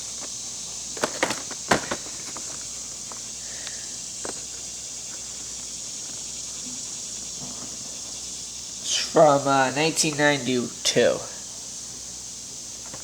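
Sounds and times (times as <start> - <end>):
steady hiss: 0.0 - 13.0
plastic package clicks and knocks: 1.0 - 3.2.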